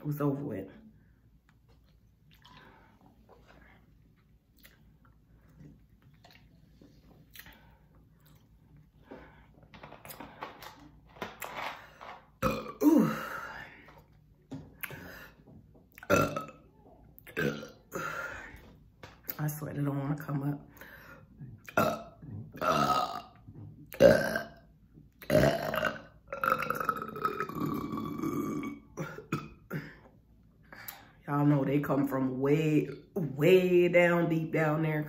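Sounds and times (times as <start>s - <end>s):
woman burping: 12.4s - 13.6s, 16.0s - 16.6s, 17.2s - 18.3s, 21.7s - 23.3s, 23.9s - 24.6s, 25.2s - 30.1s.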